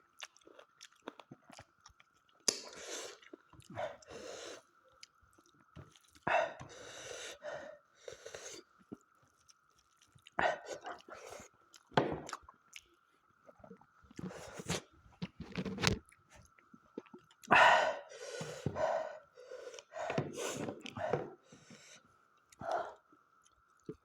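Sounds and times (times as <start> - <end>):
wet chewing and lip smacks: 0.1 - 3.8, 4.9 - 6.3, 8.7 - 14.3.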